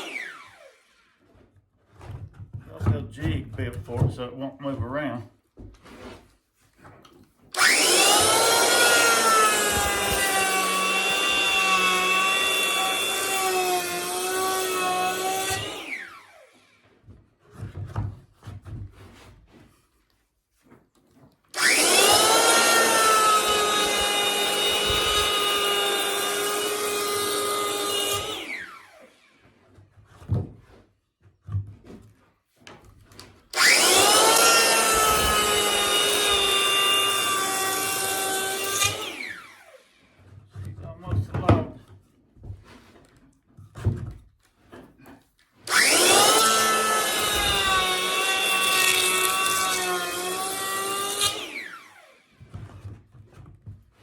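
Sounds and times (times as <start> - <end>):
electric hand planer whining: 0.0 - 1.9, 7.5 - 17.5, 21.5 - 30.8, 33.2 - 41.7, 45.6 - 53.4
wood shaving noise: 0.0 - 54.0.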